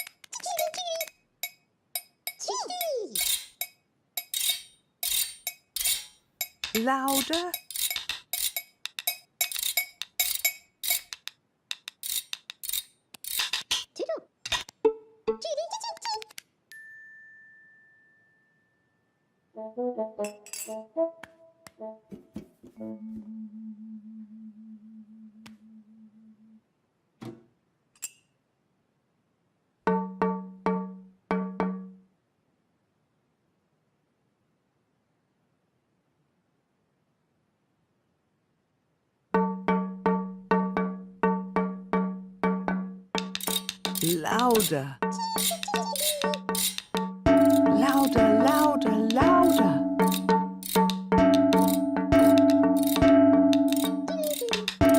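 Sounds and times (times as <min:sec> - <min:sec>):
sharp metallic clanks: 0:00.0 - 0:13.9, 0:20.2 - 0:20.8, 0:43.2 - 0:54.9
low struck musical notes: 0:39.4 - 0:54.9.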